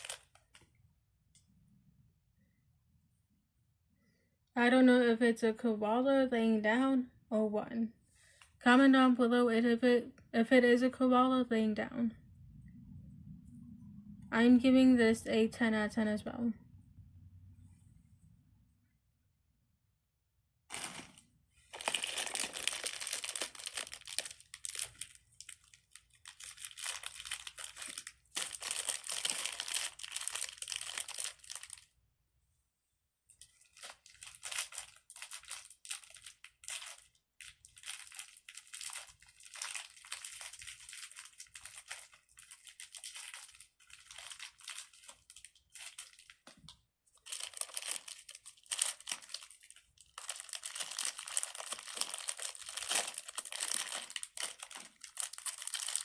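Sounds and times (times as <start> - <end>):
plastic crinkling and rustling: 0.0 - 0.8, 20.7 - 31.9, 33.3 - 56.0.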